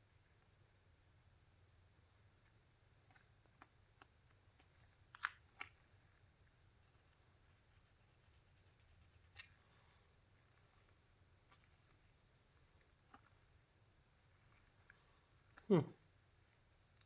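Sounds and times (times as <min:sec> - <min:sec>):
faint clicks of small part: 0:02.4 - 0:05.8.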